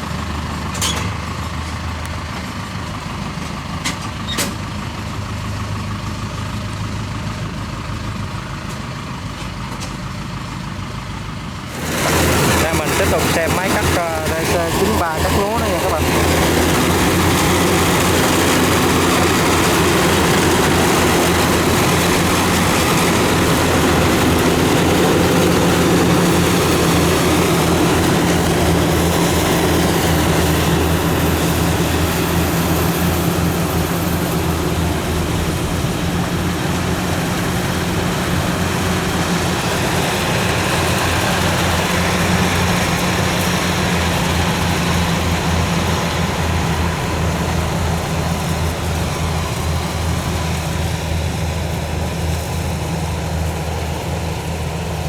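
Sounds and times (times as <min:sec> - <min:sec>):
diesel engine hum: 0:00.0 - 0:55.0
threshing machinery whirring: 0:11.6 - 0:55.0.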